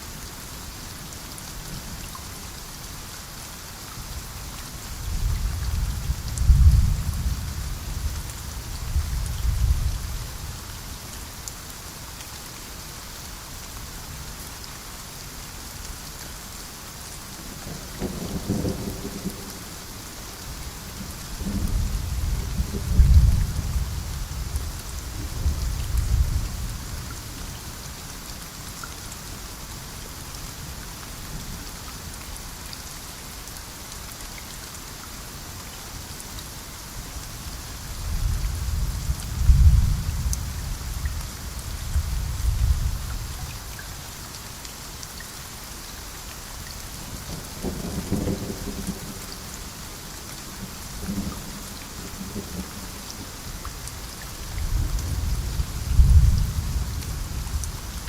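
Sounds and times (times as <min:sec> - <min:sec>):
rain hissing: 0:35.2 - 0:58.0
deep thunder rumbling: 0:38.1 - 0:40.8, 0:54.7 - 0:57.6.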